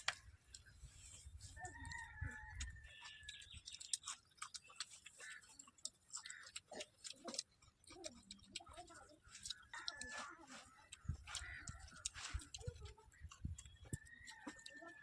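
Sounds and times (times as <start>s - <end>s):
faint rooster crow: 1.6s - 3.3s.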